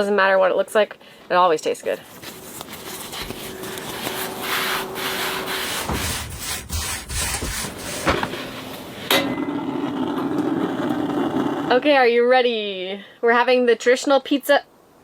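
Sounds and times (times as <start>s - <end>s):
dough rubbing and scraping on board: 2.0s - 8.8s.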